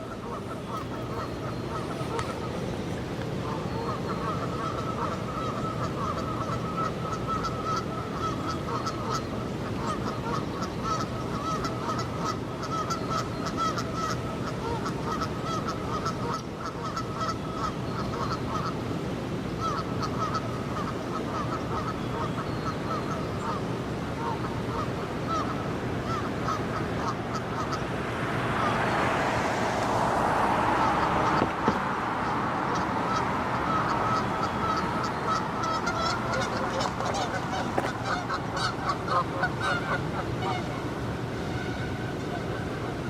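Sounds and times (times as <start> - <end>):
geese honking: 0.0 - 18.9, 19.5 - 43.0
background rush: 23.5 - 43.0.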